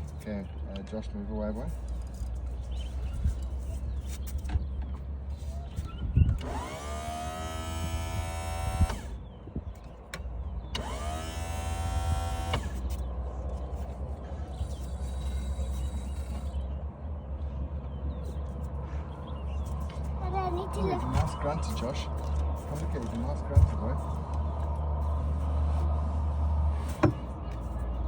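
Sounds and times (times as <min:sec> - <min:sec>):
electric trim motor whining: 0:06.4 - 0:09.2, 0:10.8 - 0:13.0.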